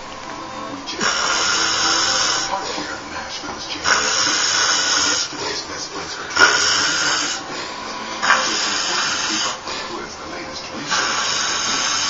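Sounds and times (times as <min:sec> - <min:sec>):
airy rasping snoring: 0:00.9 - 0:12.0.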